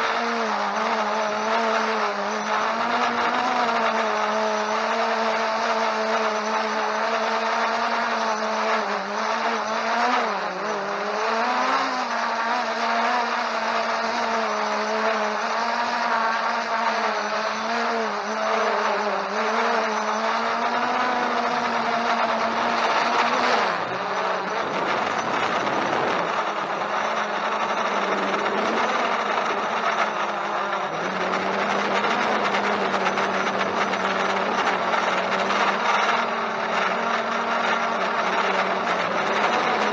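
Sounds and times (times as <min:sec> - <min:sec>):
quadcopter propellers whining: 0:00.0 - 0:39.9
strong wind: 0:22.8 - 0:30.0.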